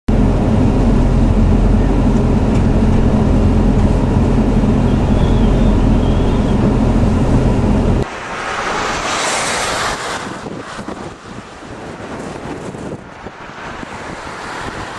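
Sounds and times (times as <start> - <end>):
vehicle engine and road noise: 0.1 - 14.9
wind on microphone: 0.1 - 14.9.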